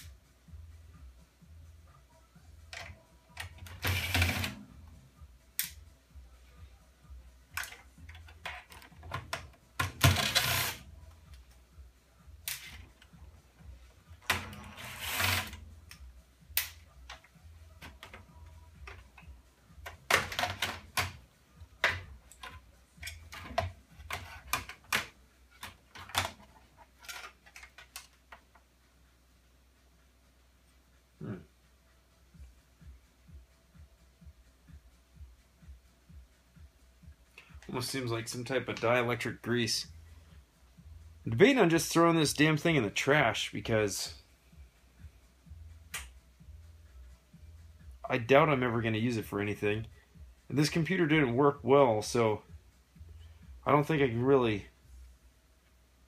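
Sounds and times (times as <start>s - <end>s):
scraping noises: 10.0s - 10.9s, 14.2s - 15.7s
plastic and metal parts clattering: 19.8s - 21.2s, 21.8s - 28.2s.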